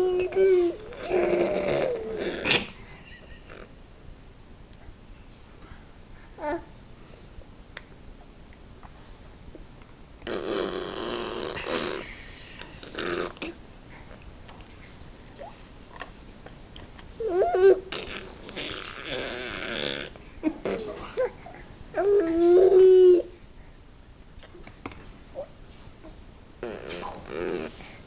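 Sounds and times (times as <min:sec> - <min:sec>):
breathy hissy vocal bursts: 0:10.3 - 0:13.6.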